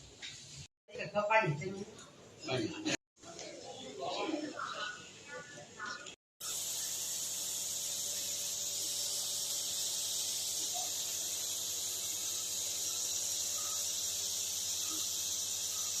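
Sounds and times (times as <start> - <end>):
high-pitched hiss: 6.4 - 16.0.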